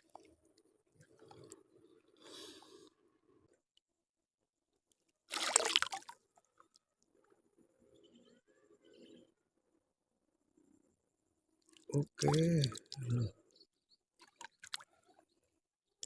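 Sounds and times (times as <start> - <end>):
short splash in water: 5.3 - 6.0.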